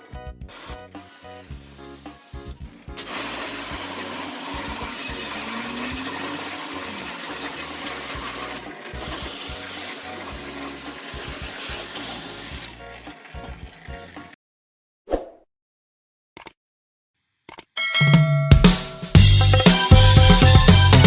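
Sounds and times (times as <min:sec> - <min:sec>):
water spraying: 0:00.0 - 0:14.4
background music with bass beat: 0:18.6 - 0:21.0.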